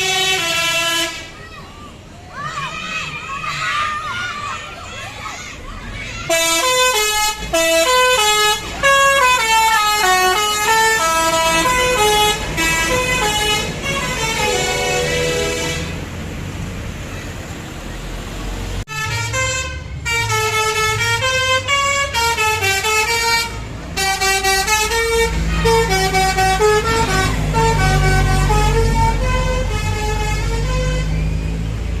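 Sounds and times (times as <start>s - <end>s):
musical bus horn melodies: 0.0s - 1.4s, 6.3s - 16.1s, 18.9s - 31.6s
vehicle engine rumble: 0.0s - 32.0s.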